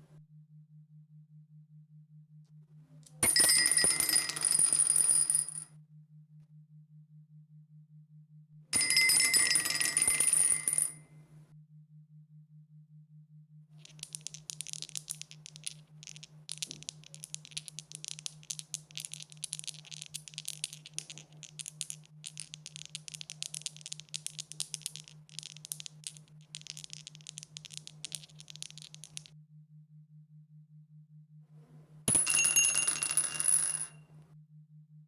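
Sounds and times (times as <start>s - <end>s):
dice rattling: 13.8s - 29.3s.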